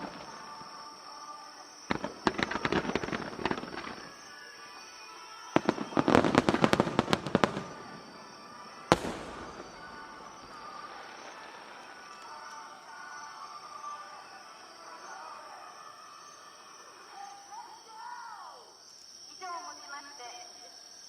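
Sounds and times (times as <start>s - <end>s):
fireworks bangs and crackles: 0.0s - 1.0s, 1.7s - 12.7s
firework shell burst boom: 5.6s - 11.4s.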